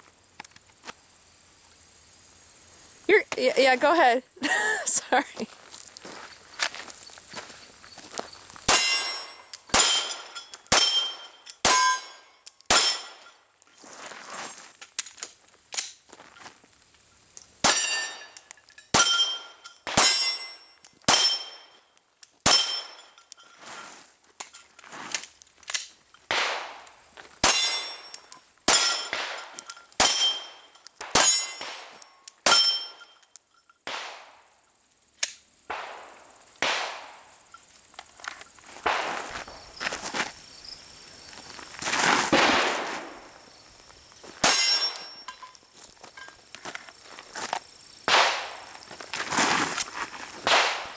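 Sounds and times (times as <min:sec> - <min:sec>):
pistol shots: 0:08.7 - 0:13.2, 0:19.0 - 0:20.4, 0:26.3 - 0:28.0, 0:28.7 - 0:32.8, 0:33.9 - 0:34.4, 0:35.7 - 0:37.3, 0:38.8 - 0:39.2, 0:42.3 - 0:43.2, 0:48.1 - 0:48.7, 0:50.4 - 0:50.9
ring of struck steel targets: 0:08.7 - 0:13.4, 0:17.6 - 0:21.8, 0:22.5 - 0:23.4, 0:27.4 - 0:34.4, 0:44.4 - 0:45.6
faint distant gunshots: 0:35.7 - 0:37.3, 0:48.1 - 0:48.6, 0:50.4 - 0:50.9.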